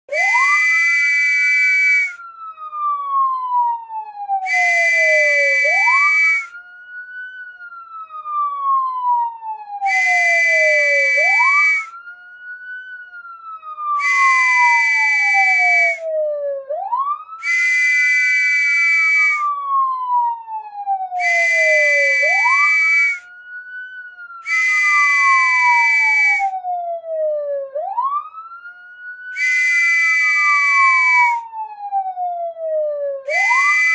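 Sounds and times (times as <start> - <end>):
police whistle blasts: 0.1 - 2.2, 4.4 - 6.5, 9.8 - 11.9, 14.0 - 16.1, 17.4 - 19.5, 21.2 - 23.2, 24.4 - 26.5, 29.3 - 31.4, 33.3 - 33.9
police siren wail: 0.1 - 33.9.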